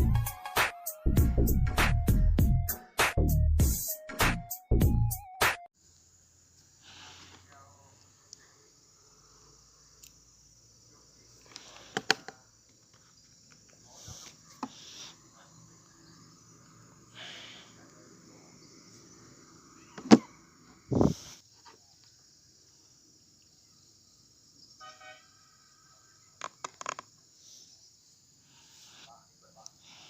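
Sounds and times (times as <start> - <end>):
faint steady hiss: 5.8 - 26.4.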